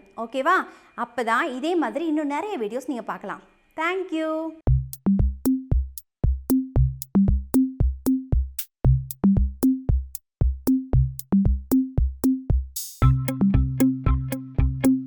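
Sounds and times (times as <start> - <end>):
short bass notes: 4.7 - 5.9, 6.5 - 7.7, 8.3 - 10.0, 10.8 - 11.8, 13.0 - 15.0
electronic drum machine beat: 4.7 - 15.0.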